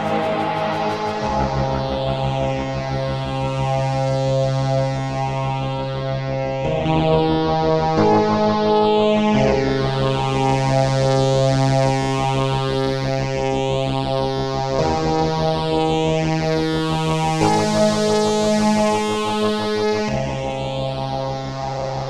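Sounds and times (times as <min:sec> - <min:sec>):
synthesizer chords with phaser: 0:00.0 - 0:02.6.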